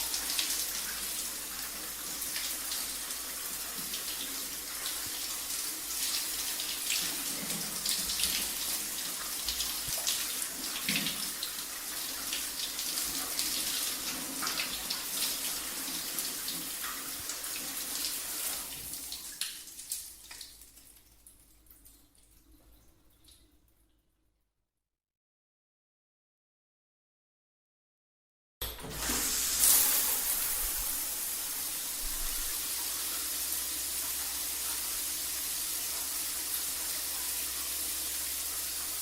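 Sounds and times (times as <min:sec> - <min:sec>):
shower water spraying: 0:28.8 - 0:39.0.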